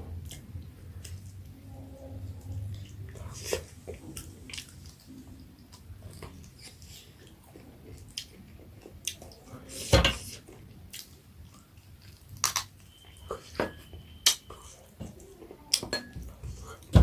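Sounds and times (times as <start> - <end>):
soft chewing: 0.1 - 17.0
dishes and cutlery clinking: 13.3 - 14.0, 15.8 - 17.0.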